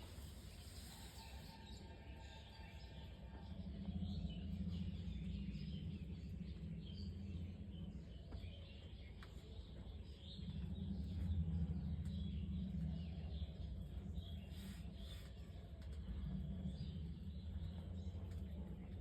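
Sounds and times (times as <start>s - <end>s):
small birds chirping: 2.4s - 19.0s.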